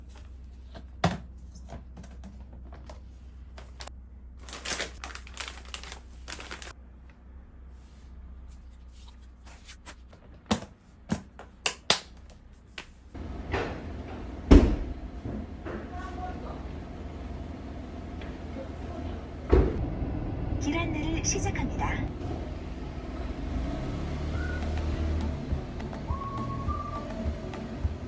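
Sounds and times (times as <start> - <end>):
loud thump: 14.5 - 15.4, 19.5 - 19.9
steady noise: 16.6 - 23.4.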